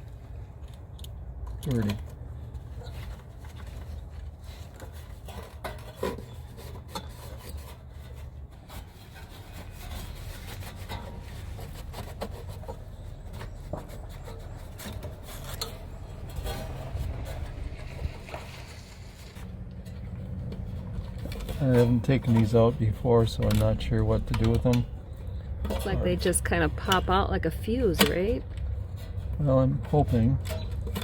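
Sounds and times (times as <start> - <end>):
small handling clicks and knocks: 0.0 - 8.8, 19.7 - 26.1, 27.9 - 31.0.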